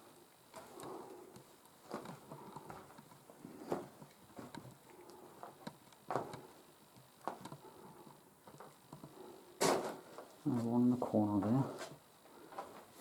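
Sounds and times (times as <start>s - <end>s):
slow scuffing footsteps: 1.8s - 4.7s, 5.4s - 6.6s.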